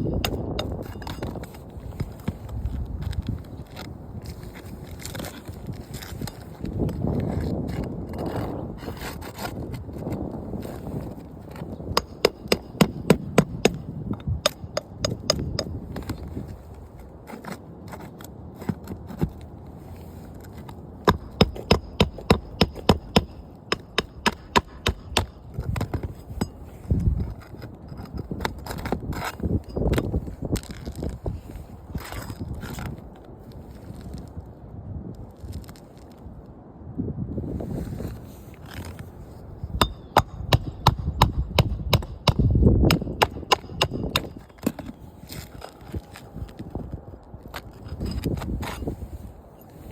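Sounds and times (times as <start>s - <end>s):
hammer driving nails: 12.0s - 15.7s, 21.0s - 26.5s, 39.8s - 44.9s.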